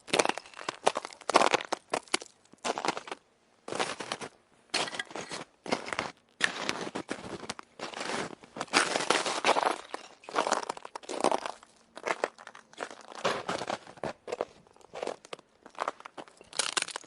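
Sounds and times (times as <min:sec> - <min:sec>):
footsteps crunching on ice: 0:00.0 - 0:17.0.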